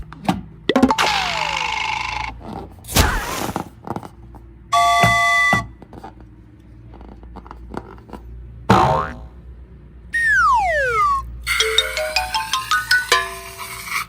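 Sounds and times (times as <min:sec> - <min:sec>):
hissing burst with falling whistle: 0:10.2 - 0:11.8.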